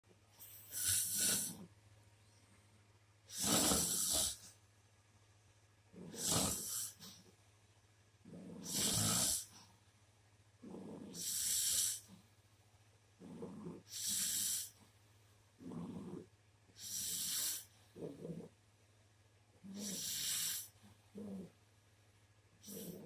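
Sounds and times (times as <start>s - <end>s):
dog and man snoring: 0.4s - 1.7s, 3.3s - 4.6s, 5.9s - 7.2s, 8.3s - 9.6s, 10.6s - 12.2s, 13.2s - 14.8s, 15.6s - 18.6s, 19.6s - 21.6s, 22.6s - 23.0s.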